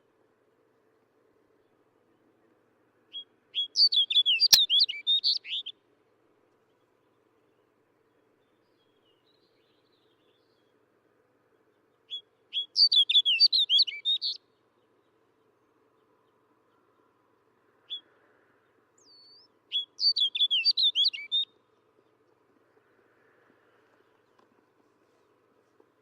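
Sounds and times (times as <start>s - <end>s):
bird singing warbled notes: 3.7s - 5.7s.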